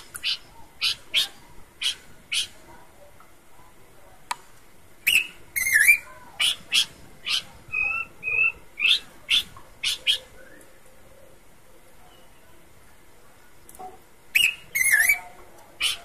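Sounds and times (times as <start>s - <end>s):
bird sharp whistled calls: 5.1s - 10.6s, 14.4s - 16.0s.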